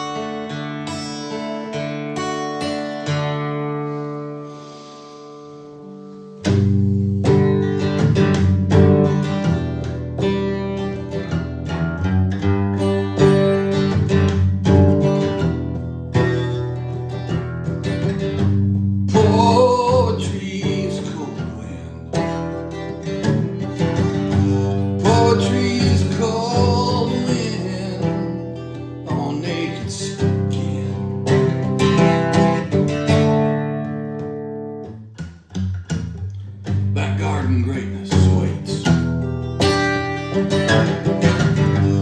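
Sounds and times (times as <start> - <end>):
strummed guitar chords: 0.0 - 42.0
wavering guitar melody: 0.0 - 42.0.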